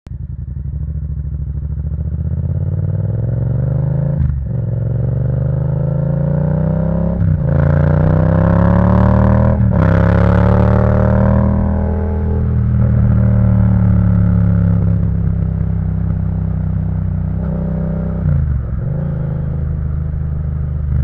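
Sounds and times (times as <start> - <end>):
motorcycle engine accelerating: 0.1 - 21.0.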